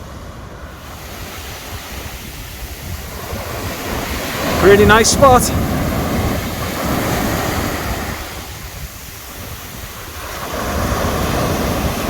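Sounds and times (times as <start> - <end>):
surf washing onto beach: 0.0 - 12.0
wind buffeting microphone: 0.0 - 12.0.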